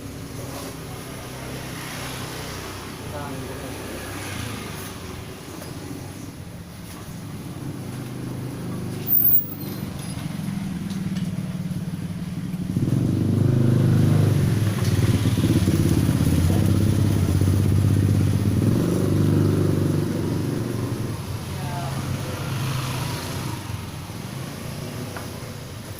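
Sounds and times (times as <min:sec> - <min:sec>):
vehicle engine running: 0:06.8 - 0:25.9.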